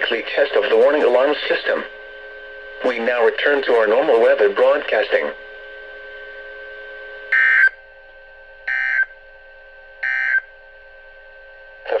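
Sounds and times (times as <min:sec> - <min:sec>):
steady tone hum: 0:00.0 - 0:12.0
buzzy two-tone data bursts: 0:07.3 - 0:07.8, 0:08.7 - 0:09.1, 0:10.0 - 0:10.5.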